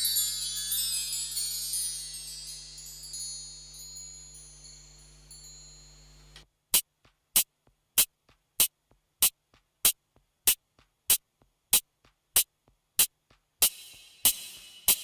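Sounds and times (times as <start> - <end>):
drum machine beat: 6.5 - 15.0.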